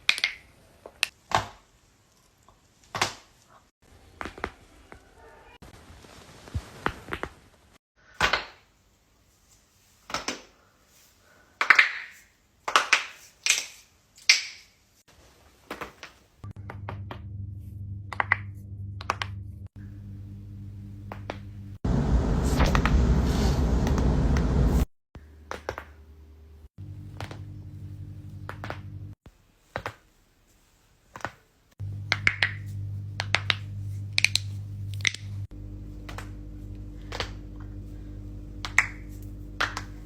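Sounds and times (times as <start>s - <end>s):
low hum: 16.5s - 24.9s, 26.3s - 29.2s, 31.8s - 40.0s
loud rushing noise: 21.9s - 24.9s.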